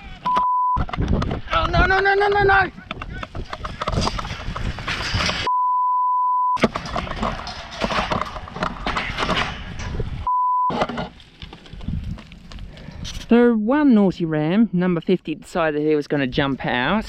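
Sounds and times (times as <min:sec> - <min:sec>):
censor bleep: 0:00.3 - 0:00.8, 0:05.5 - 0:06.6, 0:10.3 - 0:10.7
sheep hooves clattering: 0:00.9 - 0:05.5, 0:06.6 - 0:10.2
metal yard panels shaking: 0:01.1 - 0:05.5, 0:06.6 - 0:10.2.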